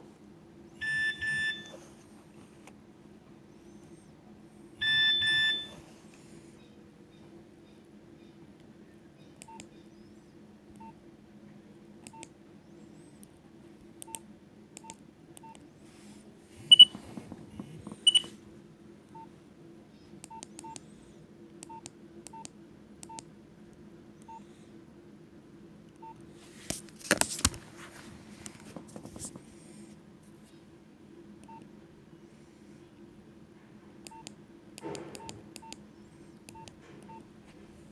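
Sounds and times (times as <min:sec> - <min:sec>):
phone key beeps and clicks: 0:00.8 - 0:01.7, 0:04.8 - 0:05.8, 0:16.7 - 0:16.9, 0:18.0 - 0:18.3, 0:34.1 - 0:35.8, 0:36.5 - 0:37.2.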